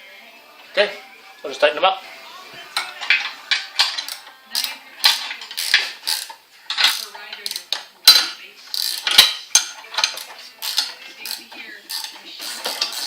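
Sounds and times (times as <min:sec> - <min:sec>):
wrench and bolts clinking on steel: 0:02.8 - 0:13.0.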